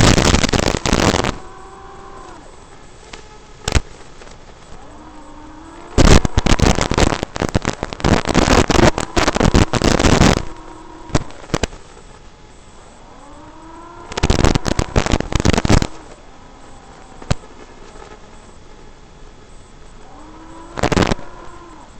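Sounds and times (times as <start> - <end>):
drone motor whine and crackle: 0.0 - 21.9.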